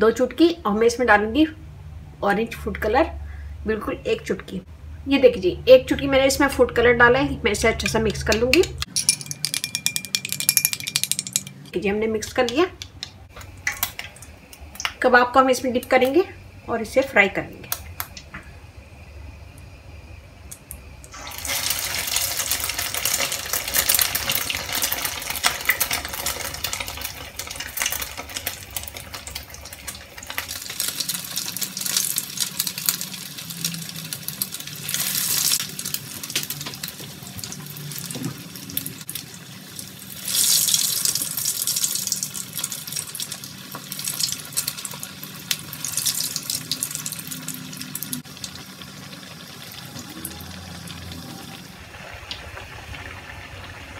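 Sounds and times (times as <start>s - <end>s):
chicken sizzling in hot oil: 21.1s - 53.9s.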